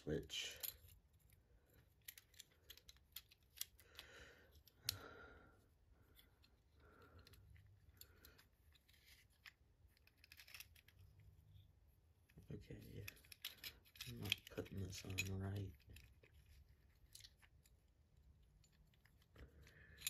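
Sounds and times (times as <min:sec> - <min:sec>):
rustling of hands handling wires: 0:00.0 - 0:20.0
clicks of small metal parts: 0:02.0 - 0:05.0, 0:07.1 - 0:11.0, 0:12.8 - 0:16.3.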